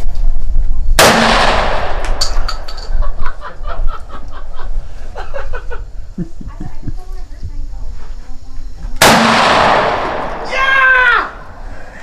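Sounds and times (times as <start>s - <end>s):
gunshot with echo: 1.0s - 3.4s, 9.0s - 11.6s.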